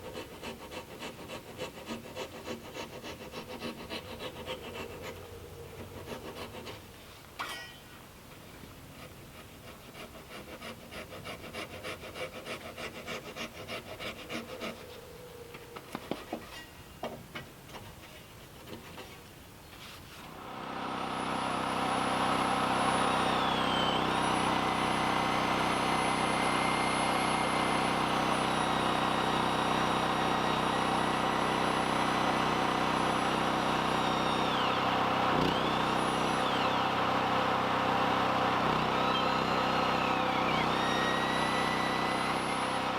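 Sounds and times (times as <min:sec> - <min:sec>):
hand tool rubbing on timber: 0:00.0 - 0:07.8, 0:08.9 - 0:16.9
small engine machine whining: 0:20.2 - 0:42.9.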